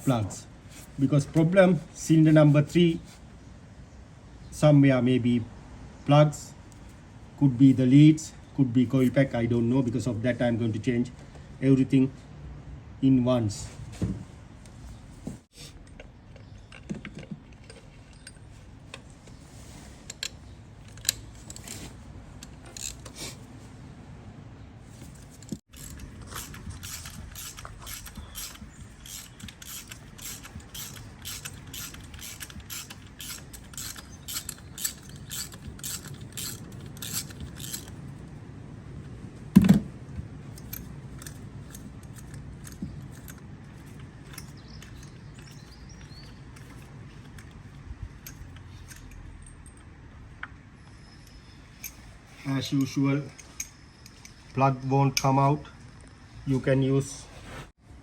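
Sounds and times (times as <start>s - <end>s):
ratchet wrench clicking: 22.4s - 23.1s, 25.4s - 38.0s, 40.6s - 43.4s.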